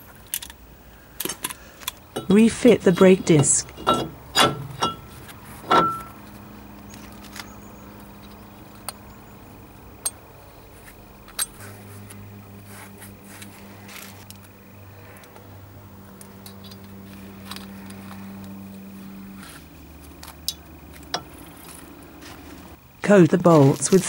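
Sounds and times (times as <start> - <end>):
low steady hum: 0.0 - 24.0
metallic clinks of brake disc: 2.1 - 10.2, 11.2 - 11.7.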